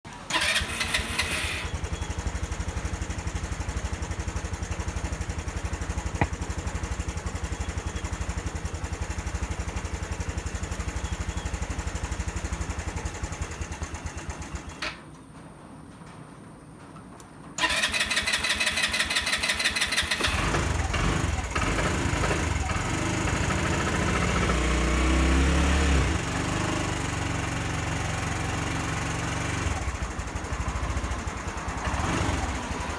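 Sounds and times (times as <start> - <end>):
electric starter cranking: 0.1 - 3.4, 17.6 - 23.1
scooter engine idling: 0.1 - 15.0, 17.6 - 32.9.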